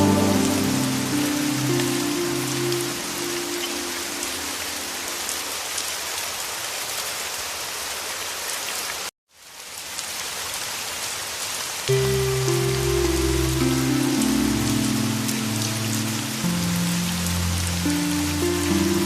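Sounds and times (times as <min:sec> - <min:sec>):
low music chord: 0:00.0 - 0:05.1, 0:11.9 - 0:19.0
heavy rain: 0:00.0 - 0:19.0.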